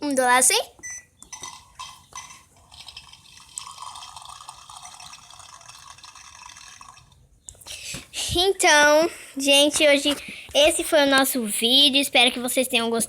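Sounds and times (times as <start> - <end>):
toy pouring-water sound effect: 1.5 - 7.2.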